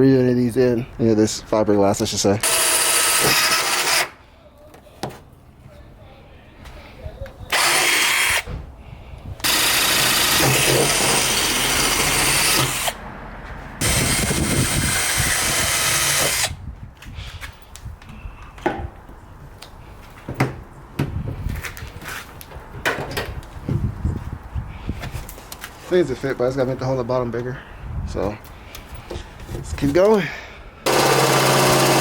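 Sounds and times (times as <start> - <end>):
cordless drill boring: 2.4 - 4.1, 7.5 - 8.5, 9.4 - 13.0, 13.8 - 16.5, 30.9 - 32.0.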